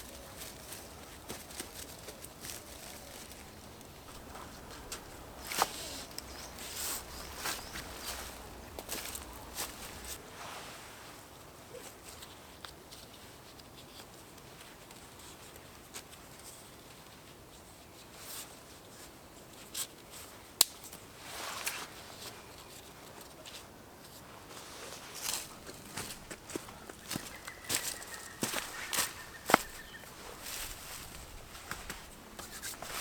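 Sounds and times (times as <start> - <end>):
twigs crackling: 0.0 - 10.2, 24.8 - 33.0
rustling leaf litter: 0.0 - 11.3, 24.2 - 33.0.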